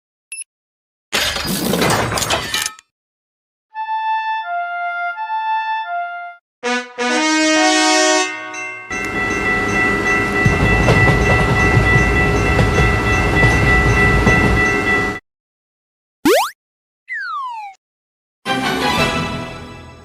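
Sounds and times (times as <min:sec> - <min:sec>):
train horn: 0:06.6 - 0:11.4
train rumble and clatter: 0:08.9 - 0:15.2.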